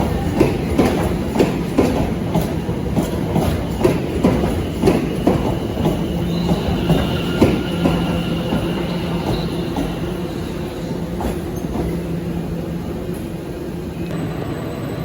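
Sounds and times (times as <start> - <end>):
train wheels clacking over rail joints: 0.0 - 13.4
train rumble: 0.0 - 15.0
high wheel squeal: 4.6 - 12.0.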